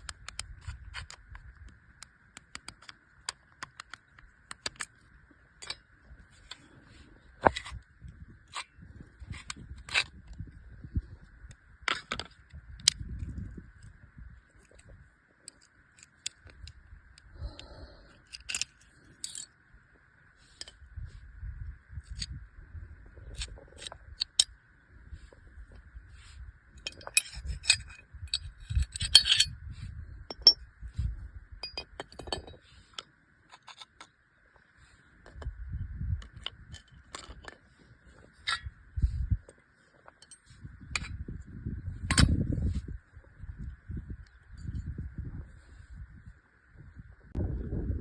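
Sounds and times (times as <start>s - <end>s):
metal parts clicking and clinking: 2.5s - 6.7s, 14.6s - 19.6s, 23.2s - 24.6s, 26.7s - 29.6s, 30.3s - 30.6s, 31.6s - 34.2s, 36.2s - 38.8s, 42.1s - 42.5s.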